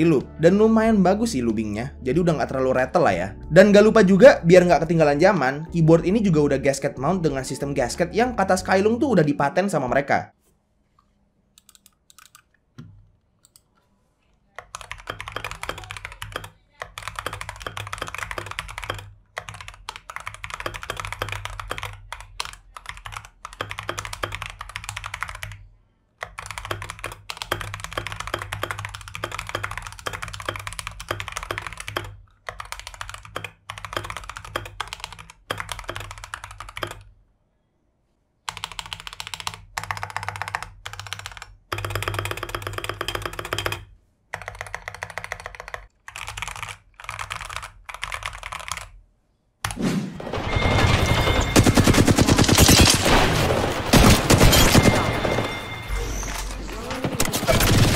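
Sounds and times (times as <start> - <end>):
fast keyboard typing: 11.6 - 13.7, 14.6 - 37.1, 38.4 - 49.0, 51.6 - 53.1.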